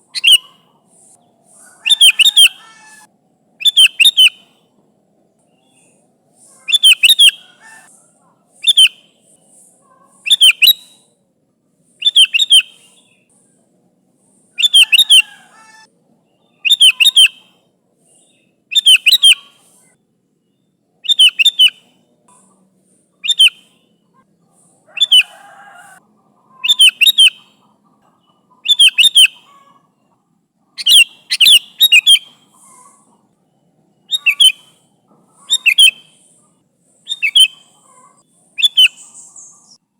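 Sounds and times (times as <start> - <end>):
bulbul calling: 0.0 - 4.6, 5.6 - 11.0, 12.0 - 13.3, 14.6 - 15.9, 16.5 - 19.8, 21.0 - 22.5, 23.2 - 25.9, 26.5 - 29.8, 30.8 - 33.2, 34.0 - 39.8.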